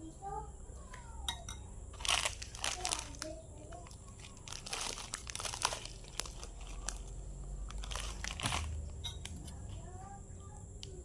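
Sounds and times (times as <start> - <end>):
crunching and chewing: 1.9 - 9.8.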